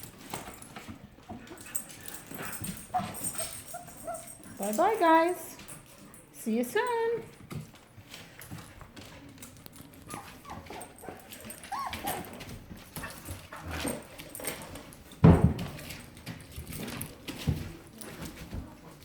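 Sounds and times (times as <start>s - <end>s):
puppies whimpering and yipping: 2.8s - 4.6s, 10.0s - 12.5s
thud: 15.2s - 15.8s.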